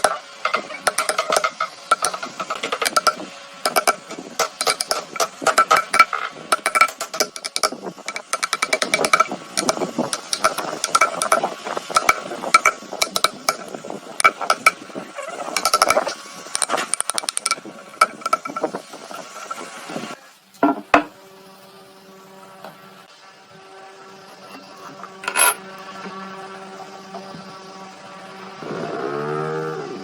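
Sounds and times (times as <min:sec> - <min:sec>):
woodworking tool clicking and knocking: 0:00.0 - 0:14.8, 0:15.6 - 0:18.8.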